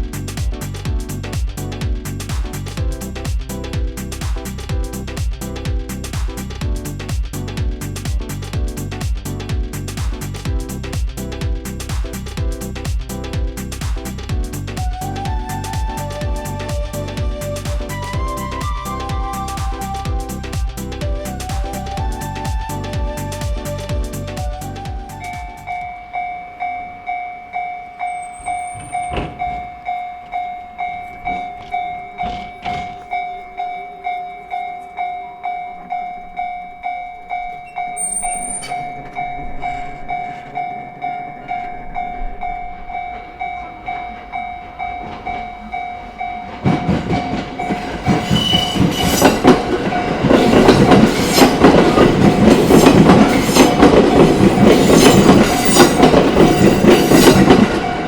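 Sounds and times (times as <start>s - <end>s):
train wheels clacking over rails: 0.0s - 14.9s, 28.1s - 33.7s, 37.9s - 58.0s
level crossing bell ringing: 25.6s - 32.2s, 33.1s - 46.5s.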